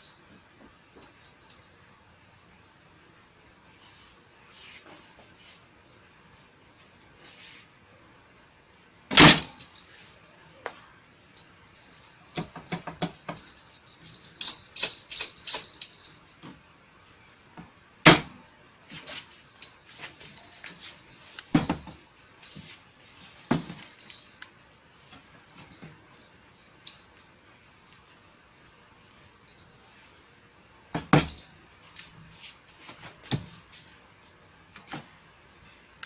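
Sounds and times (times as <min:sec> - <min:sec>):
light metallic jingling: 0:00.0 - 0:01.7, 0:09.4 - 0:10.4, 0:11.6 - 0:16.3, 0:19.4 - 0:21.5, 0:22.4 - 0:24.8, 0:25.6 - 0:28.2, 0:29.4 - 0:30.3, 0:31.2 - 0:31.6
handling clicks and rattles: 0:11.9 - 0:16.1.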